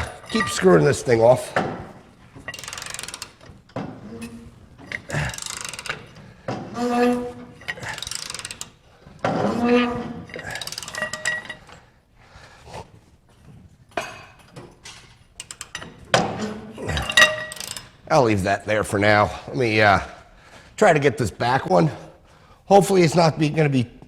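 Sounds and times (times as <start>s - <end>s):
metal squeaking: 0.0s - 1.5s, 2.3s - 11.7s
hand ratchet clicking: 2.4s - 3.8s, 4.8s - 6.4s, 7.6s - 8.8s, 10.3s - 11.8s, 15.1s - 16.3s, 16.9s - 18.0s.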